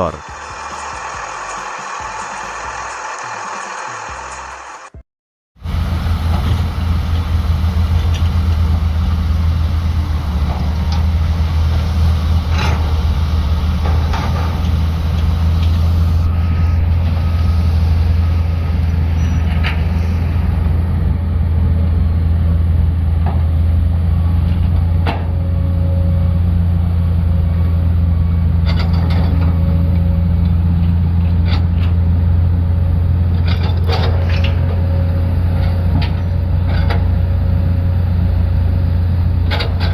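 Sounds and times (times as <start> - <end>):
diesel engine droning: 0.0 - 5.0, 5.6 - 39.9.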